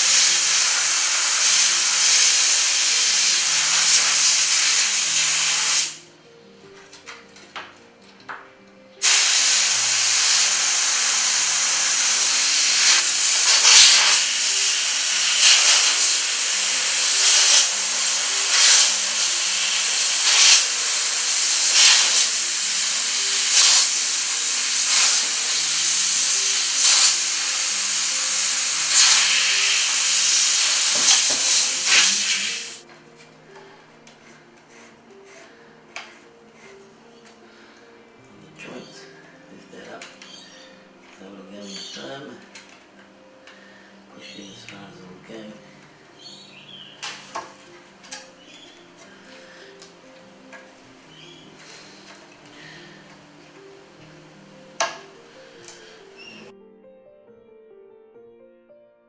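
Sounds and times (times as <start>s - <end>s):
compressed air hissing: 0.0s - 6.1s, 9.0s - 32.8s, 51.1s - 53.1s, 54.8s - 56.5s.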